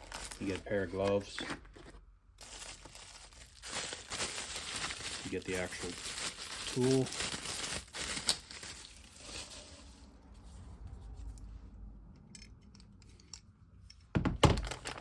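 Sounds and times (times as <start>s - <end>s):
tool rustling: 0.0s - 10.0s.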